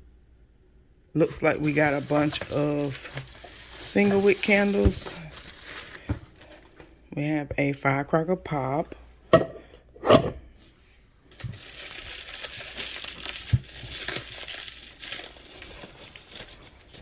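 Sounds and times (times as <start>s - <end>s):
packaging crinkling and rustling: 1.2s - 7.0s, 11.3s - 17.0s.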